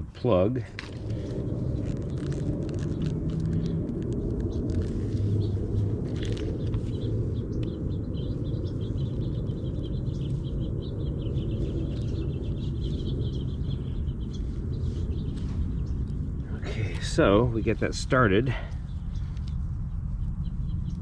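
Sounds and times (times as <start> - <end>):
low outdoor rumble: 0.0 - 21.0
small bird twittering: 0.9 - 16.6.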